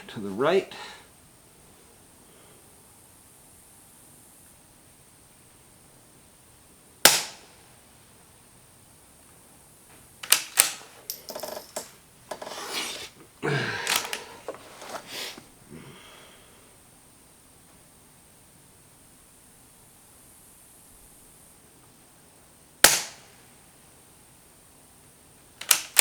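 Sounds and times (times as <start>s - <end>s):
suppressed rifle shot: 7.0s - 7.6s, 22.8s - 23.3s
rifle bolt clicks and scrapes: 10.2s - 13.2s, 13.8s - 15.2s, 25.6s - 26.0s.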